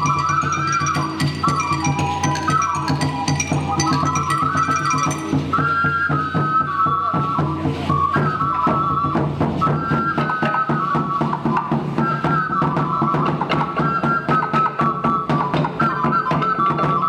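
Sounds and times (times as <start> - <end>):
plucked or struck accompaniment: 0.0 - 6.0
drums: 0.0 - 17.0
flute melody: 0.0 - 17.0.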